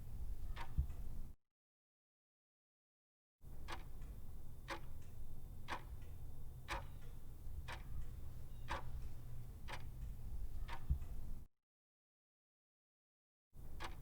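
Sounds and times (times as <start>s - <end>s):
sharp clock-like ticks: 3.6s - 11.2s, 13.8s - 14.0s
steady low hum: 4.0s - 11.5s.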